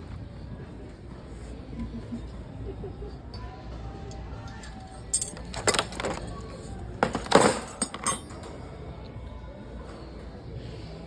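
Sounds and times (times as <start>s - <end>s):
metal cutlery rattling: 4.5s - 6.4s, 7.0s - 8.5s.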